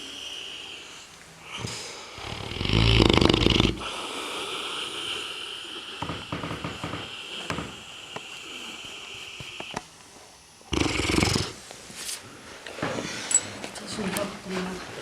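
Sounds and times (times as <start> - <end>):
wheezing breath with high hiss: 0.0 - 11.7
dog snoring: 1.5 - 9.7, 10.6 - 11.6.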